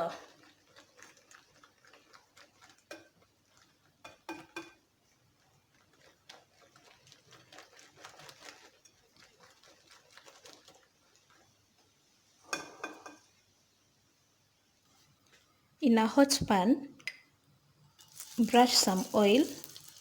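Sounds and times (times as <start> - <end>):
utensil stirring in a bowl: 0.0 - 13.2, 18.0 - 20.0.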